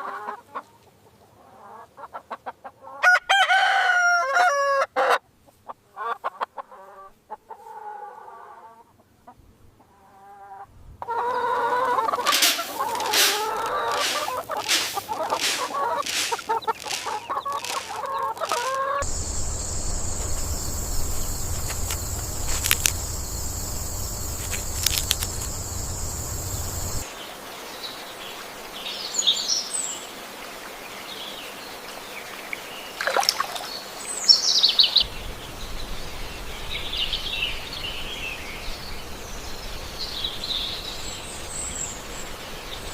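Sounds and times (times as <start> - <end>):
chickens clucking: 11.2 - 27.0
steady high hiss: 12.3 - 18.0, 18.6 - 27.0
chirps: 16.5 - 27.0
low hum: 19.0 - 27.0.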